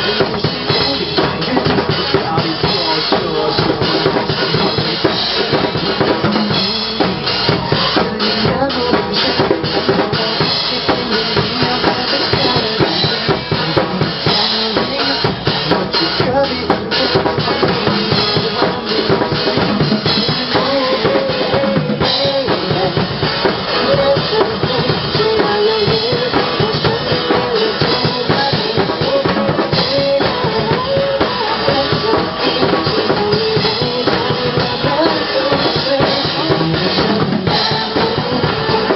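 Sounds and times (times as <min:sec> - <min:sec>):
backing music track: 0:00.0 - 0:38.9
drum kit played busily: 0:00.0 - 0:38.9.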